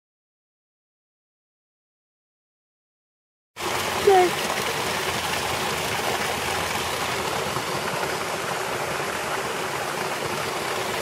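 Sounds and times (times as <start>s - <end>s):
waterfall rushing: 3.6s - 11.0s.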